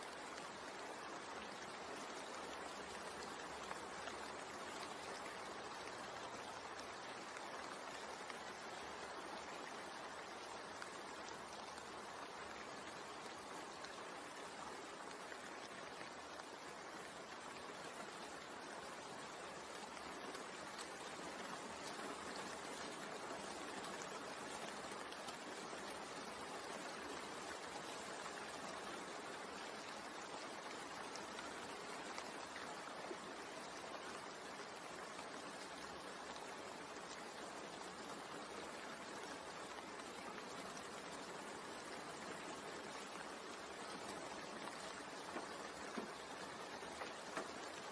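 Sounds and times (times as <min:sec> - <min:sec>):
rain pattering: 0:00.0 - 0:47.9.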